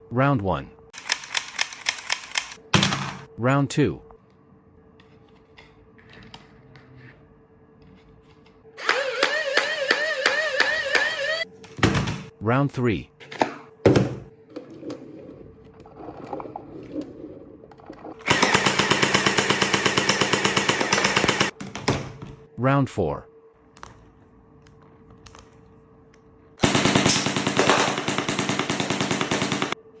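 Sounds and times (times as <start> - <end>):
gel blaster firing full-auto: 18.3 - 21.5, 26.6 - 29.8.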